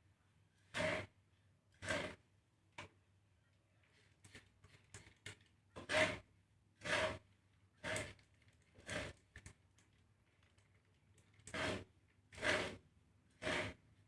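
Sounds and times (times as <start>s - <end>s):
dry seeds stirred in a pan: 11.5s - 12.8s.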